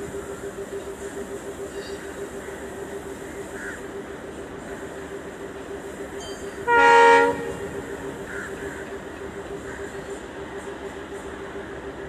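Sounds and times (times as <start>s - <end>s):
diesel engine idling: 0.0s - 12.0s
train horn blast: 6.6s - 8.5s.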